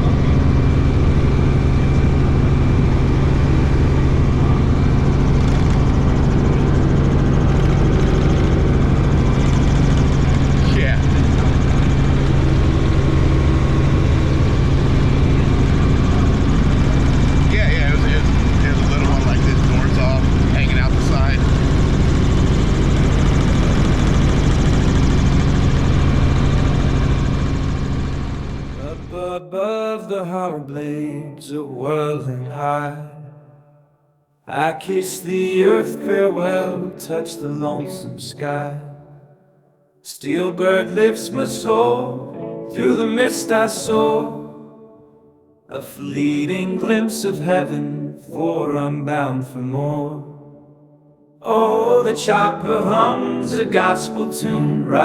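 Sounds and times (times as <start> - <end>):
helicopter engine and rotor noise: 0.0 - 29.2.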